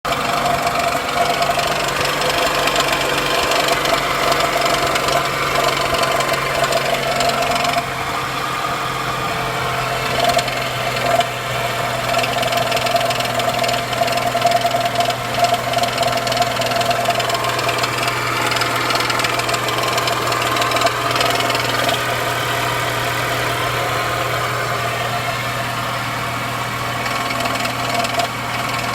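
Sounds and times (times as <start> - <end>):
car engine idling: 0.0 - 28.9
irregular knocking of pulley: 27.0 - 28.9.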